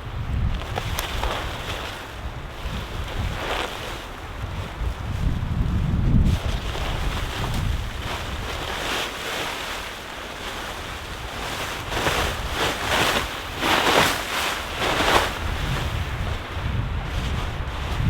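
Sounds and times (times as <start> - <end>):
wind gusting on microphone: 0.0 - 18.0.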